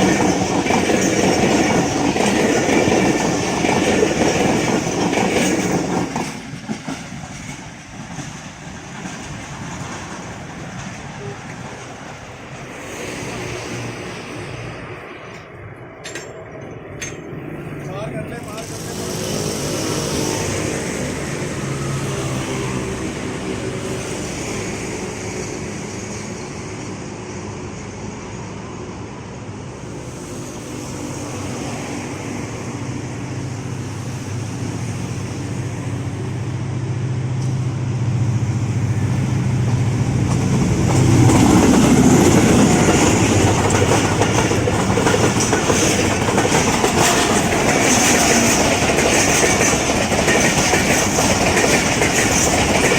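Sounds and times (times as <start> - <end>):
train wheels clattering: 0.0 - 13.8, 40.1 - 52.9
diesel locomotive engine drone: 0.0 - 52.9.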